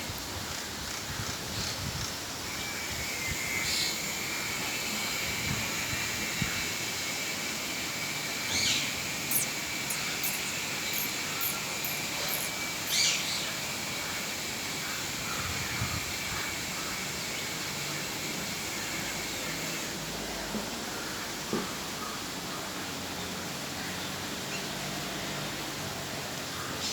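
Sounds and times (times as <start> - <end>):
outdoor hiss: 0.0 - 26.9
harsh bird calls: 8.6 - 13.5
faint high chirps: 9.3 - 13.4.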